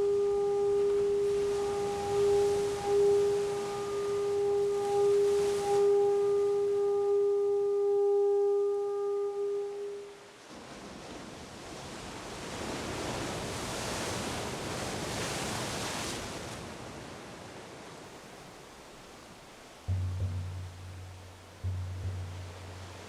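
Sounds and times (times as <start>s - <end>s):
conch shell blown: 0.0s - 10.2s, 19.8s - 23.0s.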